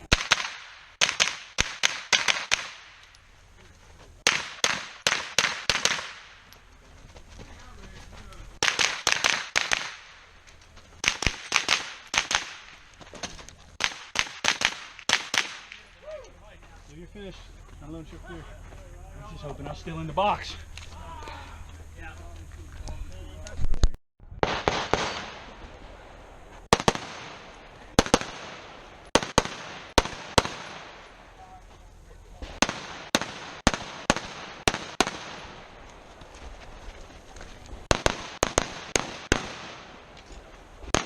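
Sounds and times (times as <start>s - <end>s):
rapid rifle fire: 0.0s - 2.9s, 4.2s - 6.4s, 8.6s - 10.2s, 11.0s - 12.8s, 13.8s - 15.8s, 24.4s - 25.5s, 26.7s - 31.0s, 32.4s - 35.7s, 37.8s - 40.1s.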